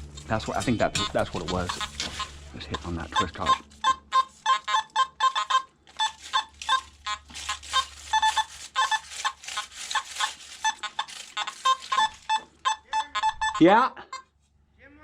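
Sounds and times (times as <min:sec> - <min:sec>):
metal detector short beeps: 0:02.7 - 0:06.9, 0:11.9 - 0:13.8.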